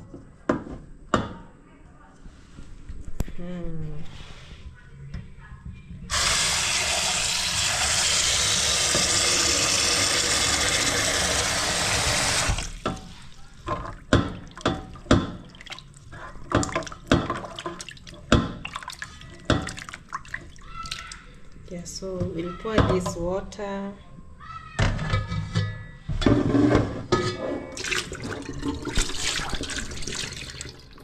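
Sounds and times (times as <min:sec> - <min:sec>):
tap water running into a pot: 0:06.1 - 0:15.9, 0:27.8 - 0:31.0
small water splashes: 0:14.4 - 0:21.3.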